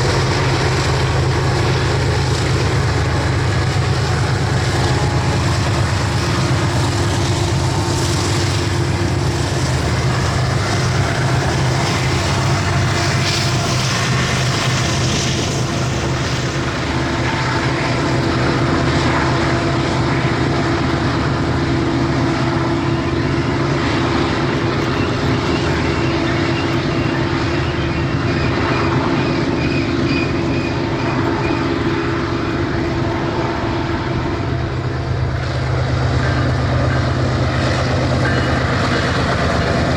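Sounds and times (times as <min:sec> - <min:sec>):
locomotive engine drone: 0:00.0 - 0:39.9
train rushing noise: 0:00.0 - 0:39.9.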